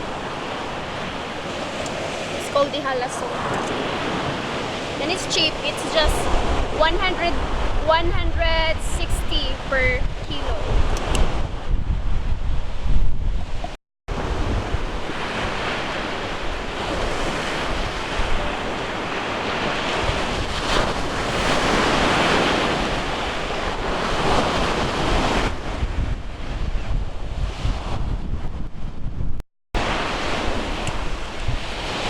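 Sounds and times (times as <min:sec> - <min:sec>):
sea surf washing onto shore: 0:00.0 - 0:11.7, 0:13.4 - 0:27.9, 0:29.8 - 0:32.0
wind buffeting microphone: 0:00.0 - 0:32.0.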